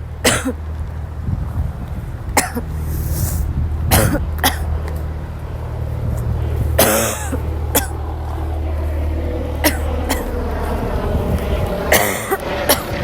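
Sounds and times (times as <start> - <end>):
low steady hum: 0.0 - 13.0
woman coughing: 0.3 - 0.6, 2.4 - 2.6, 3.9 - 4.7, 6.8 - 8.0, 9.6 - 10.4, 11.9 - 12.9.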